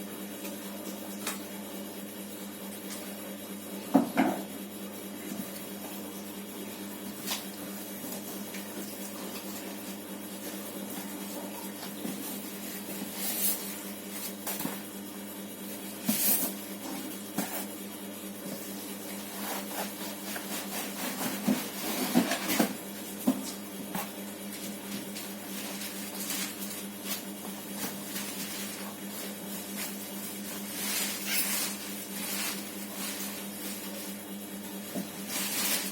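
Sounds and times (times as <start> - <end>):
steady low hum: 0.0 - 35.9
cardboard and plastic rustling: 19.1 - 34.2, 34.9 - 35.9.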